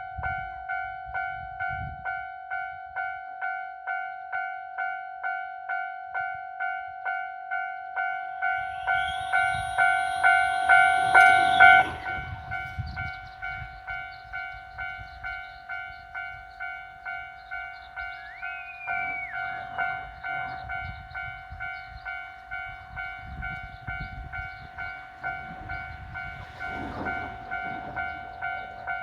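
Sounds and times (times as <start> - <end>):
electric train passing: 8.4 - 29.0
level-crossing alarm ringing: 8.4 - 29.0.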